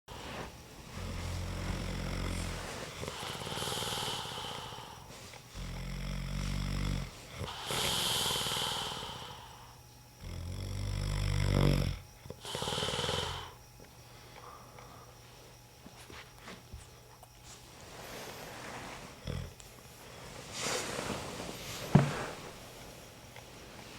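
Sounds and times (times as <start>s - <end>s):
hissing breath: 0.2s - 5.7s, 7.3s - 9.8s, 12.4s - 13.6s
man snoring: 0.9s - 13.6s, 19.2s - 19.6s.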